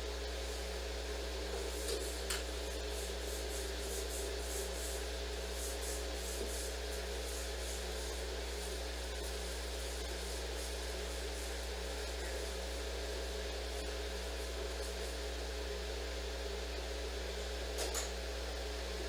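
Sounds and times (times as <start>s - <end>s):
electrical hum and hiss: 0.0s - 19.0s
soft rubbing strokes: 1.5s - 15.4s.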